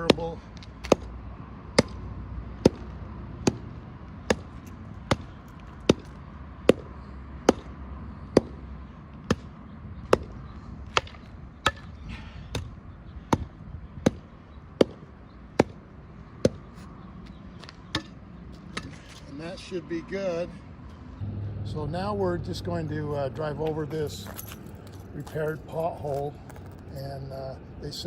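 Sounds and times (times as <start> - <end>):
hand tamper pounding asphalt: 0.0 - 1.1, 2.6 - 12.7, 13.3 - 16.7.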